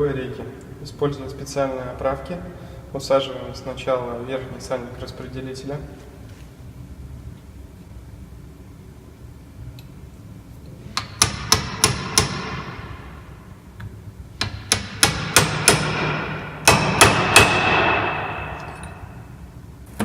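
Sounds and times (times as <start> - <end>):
hammer tapping metal: 11.0 - 13.1, 14.4 - 19.2.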